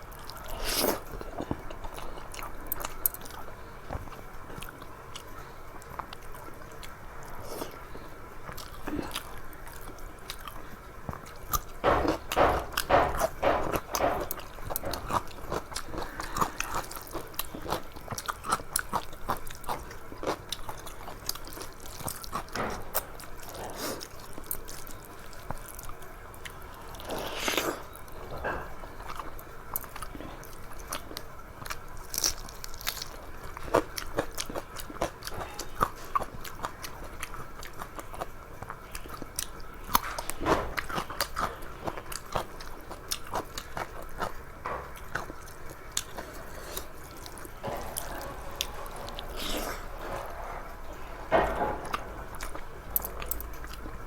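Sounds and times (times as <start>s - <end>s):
person chewing and biting: 8.4s - 28.2s.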